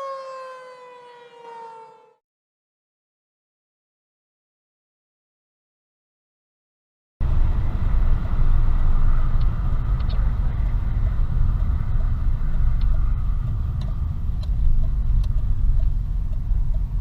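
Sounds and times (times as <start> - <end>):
vehicle low rumble: 7.2 - 17.0.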